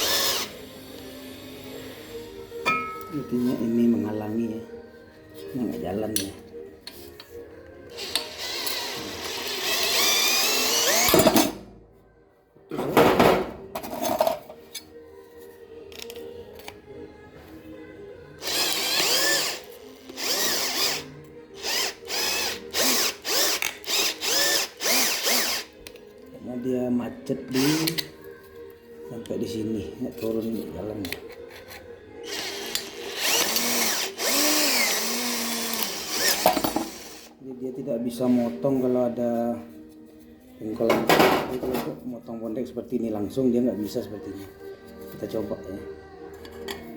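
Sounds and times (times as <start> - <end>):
drill motor whining: 0.0 - 0.7, 8.0 - 11.2, 18.4 - 25.7, 32.2 - 37.3.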